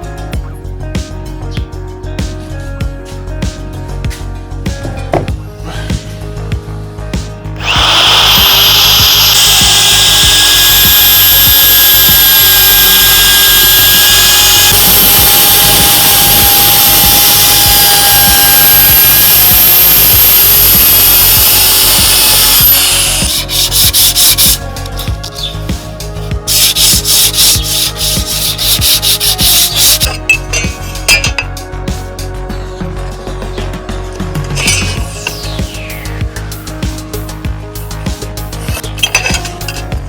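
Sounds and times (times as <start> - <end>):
background music: 0.0 - 40.0
wood router whining: 7.6 - 30.2, 34.4 - 36.4.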